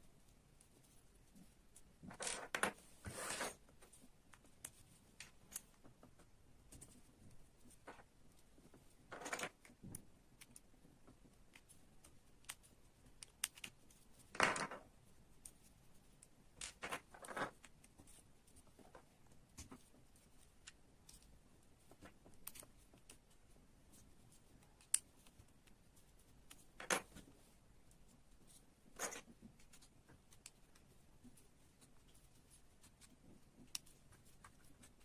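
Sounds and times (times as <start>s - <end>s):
brief scrapes of parts: 3.0s - 3.6s
light clicks of plastic parts: 3.7s - 14.0s, 16.2s - 28.3s, 29.0s - 35.0s.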